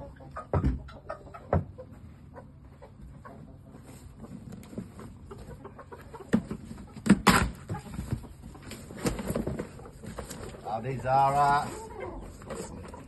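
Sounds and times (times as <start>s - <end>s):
chickens clucking: 0.0s - 13.0s
sharp knocks and rustles: 6.2s - 10.6s.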